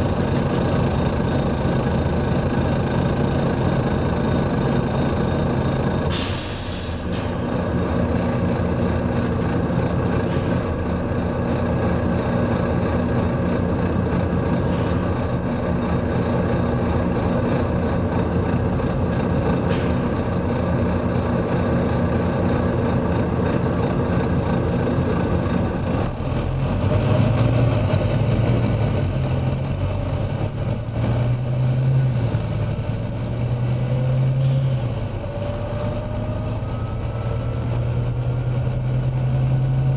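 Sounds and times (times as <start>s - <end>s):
bus diesel engine running: 0.0s - 39.9s
air hissing from brakes: 6.1s - 7.7s, 10.2s - 10.8s, 14.6s - 15.2s, 19.7s - 20.2s
rising whine: 35.2s - 38.3s.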